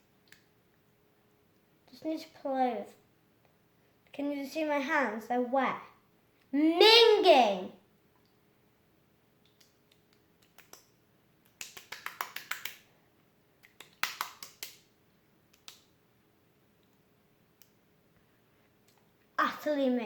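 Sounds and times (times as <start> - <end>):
wet slime squelching and clicking: 9.4 - 12.8, 13.6 - 14.8, 15.5 - 16.0.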